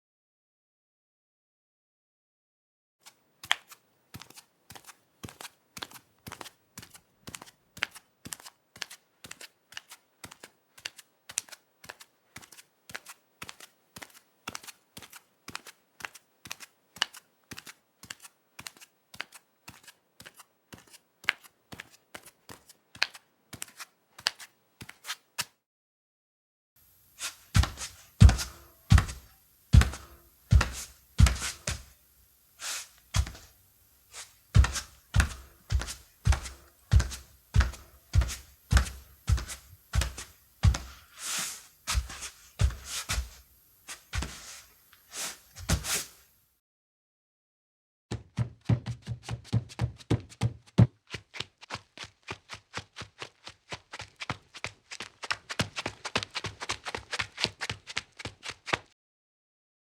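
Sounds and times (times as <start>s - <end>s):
bare feet slapping on hard floor: 27.1s - 46.2s
heavy thudding barefoot steps: 27.1s - 46.2s, 48.1s - 51.0s.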